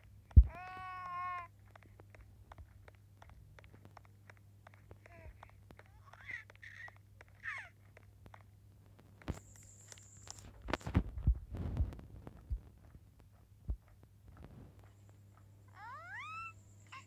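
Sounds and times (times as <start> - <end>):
high animal calls: 15.7 - 17.0.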